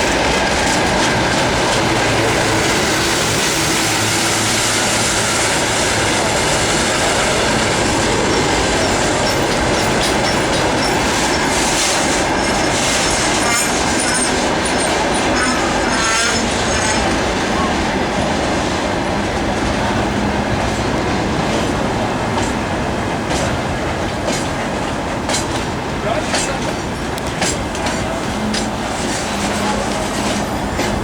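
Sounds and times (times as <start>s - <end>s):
train wagons rolling on rails: 0.0s - 31.0s
wheels squealing: 0.1s - 17.8s.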